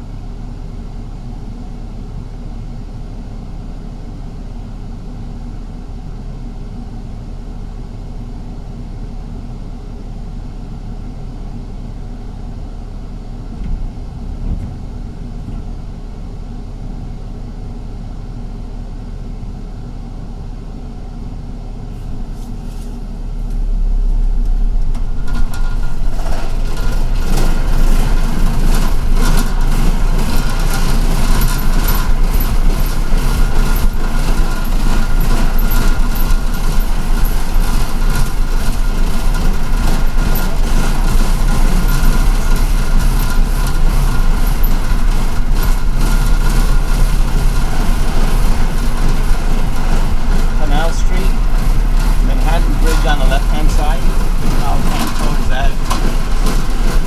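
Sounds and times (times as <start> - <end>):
bus engine and road noise: 9.5 - 57.0
thin steady whine: 21.7 - 57.0
small clicks and rattles: 24.8 - 57.0.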